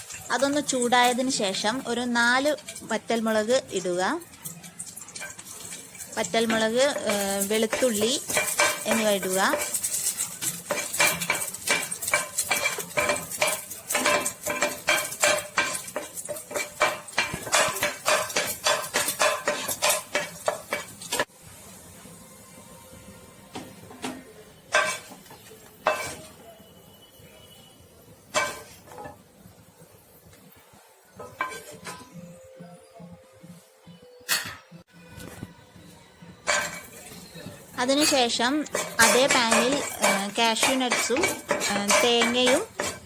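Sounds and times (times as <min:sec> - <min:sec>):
spatula scraping frying pan: 0:00.0 - 0:03.3, 0:04.3 - 0:21.3, 0:24.7 - 0:26.4, 0:31.2 - 0:32.2, 0:36.4 - 0:43.0.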